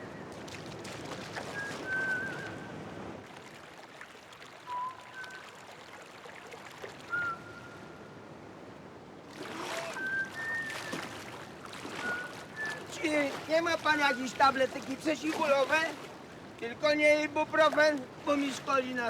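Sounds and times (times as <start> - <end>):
water splashing: 0.0 - 2.6, 3.2 - 7.4, 9.3 - 19.0
water lapping and sloshing: 0.0 - 19.0
short whistle-like notes: 9.8 - 11.0.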